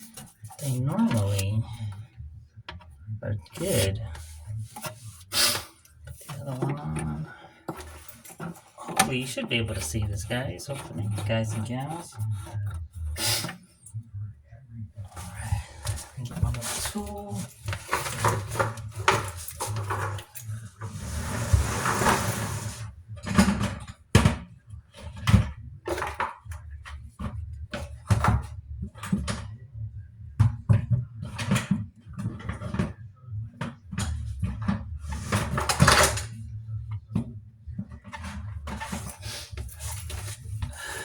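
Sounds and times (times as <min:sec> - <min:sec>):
rustling and scraping: 0:00.0 - 0:14.0, 0:15.0 - 0:23.8, 0:34.0 - 0:41.0.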